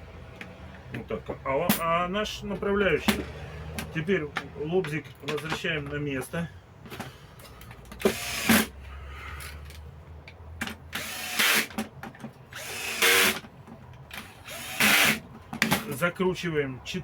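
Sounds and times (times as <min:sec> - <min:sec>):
power tool motor whirring: 0:08.0 - 0:08.7, 0:10.9 - 0:11.8, 0:12.6 - 0:13.4, 0:14.1 - 0:15.2.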